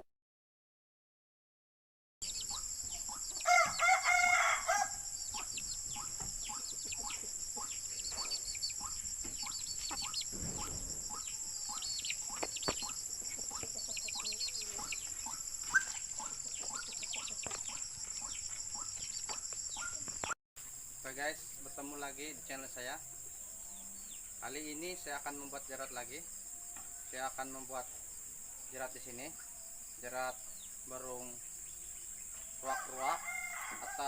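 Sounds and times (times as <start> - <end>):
high-pitched insect drone: 2.2 - 34.0
fowl-like bird call: 3.1 - 17.1, 32.6 - 34.0.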